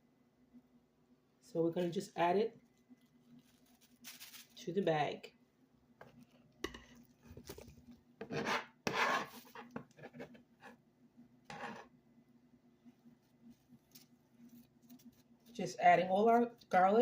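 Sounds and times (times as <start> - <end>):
plastic bag rustling: 3.2 - 4.6
scraping garlic off cutting board: 8.2 - 10.8, 11.5 - 11.9.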